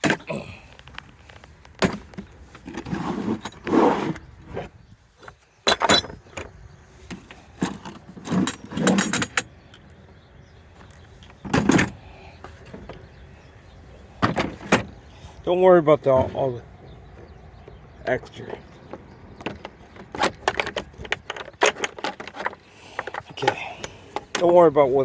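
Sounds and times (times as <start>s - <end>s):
scraping: 0.0s - 9.5s
metal tools clinking: 1.7s - 2.6s, 5.1s - 6.5s, 7.2s - 9.9s, 11.2s - 12.1s, 19.4s - 24.9s.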